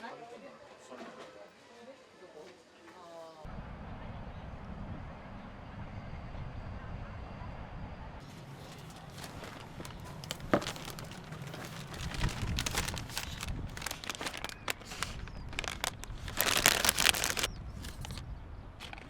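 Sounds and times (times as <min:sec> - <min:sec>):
packaging crinkling and crackling: 0:08.3 - 0:18.2.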